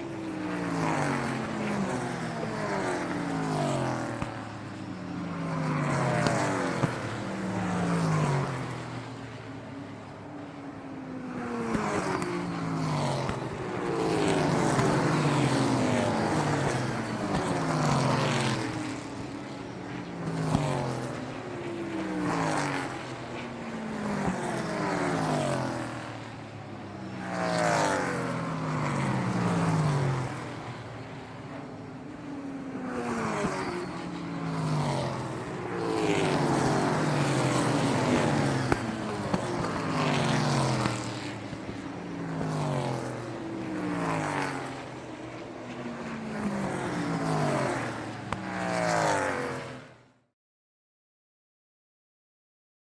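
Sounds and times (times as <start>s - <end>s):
car engines passing by: 0.0s - 50.1s.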